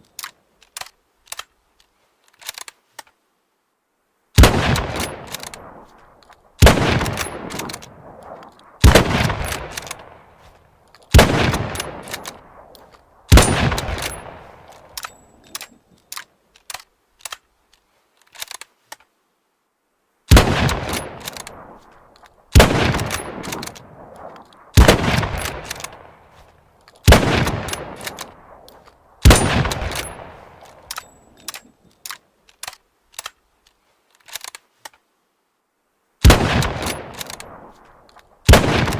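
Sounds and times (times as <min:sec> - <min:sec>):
rifle bolt clicks: 0:00.0 - 0:03.2, 0:04.4 - 0:19.1, 0:20.3 - 0:35.0, 0:36.3 - 0:38.9
rifle shots with echo: 0:04.4 - 0:10.5, 0:11.1 - 0:15.1, 0:20.3 - 0:26.4, 0:27.0 - 0:31.5, 0:36.2 - 0:38.9.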